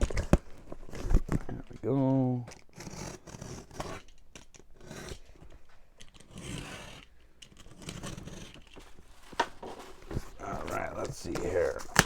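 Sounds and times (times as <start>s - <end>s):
cardboard box rustling and scraping: 0.0s - 1.9s, 6.2s - 12.0s.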